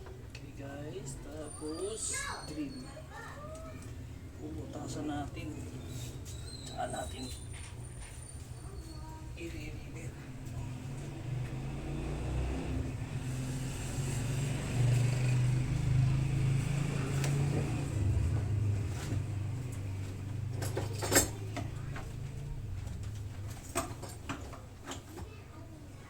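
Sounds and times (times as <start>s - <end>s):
clatter of hard parts: 17.1s - 25.4s.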